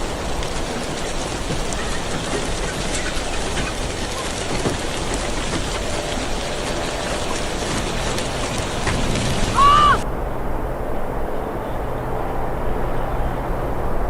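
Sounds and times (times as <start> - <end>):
heavy rain falling: 0.0 - 10.7
dull rumble: 0.0 - 14.0.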